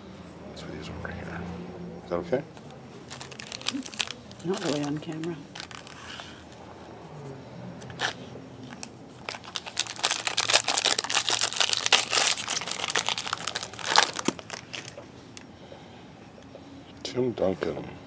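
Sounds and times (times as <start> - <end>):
wrapper tearing and crinkling: 3.1 - 6.3, 8.0 - 15.0.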